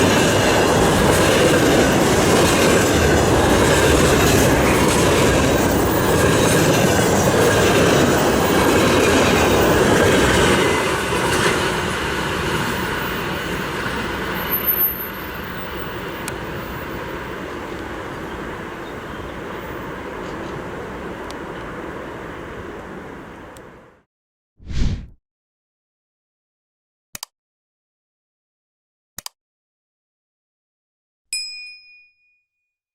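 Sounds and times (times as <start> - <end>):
freight train rolling past: 0.0 - 24.0.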